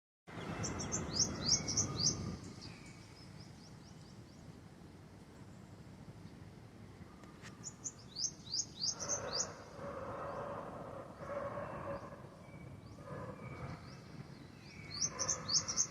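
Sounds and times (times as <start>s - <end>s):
bird chirping: 0.3s - 4.6s, 7.0s - 10.6s, 11.2s - 15.9s.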